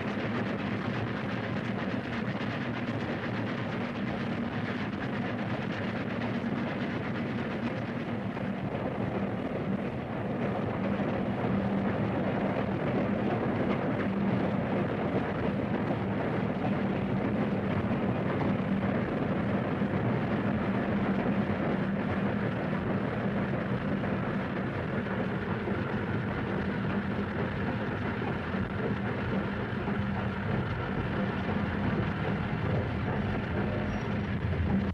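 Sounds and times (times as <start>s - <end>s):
steady low hum: 0.0s - 34.9s
steam train rumbling: 0.0s - 34.9s.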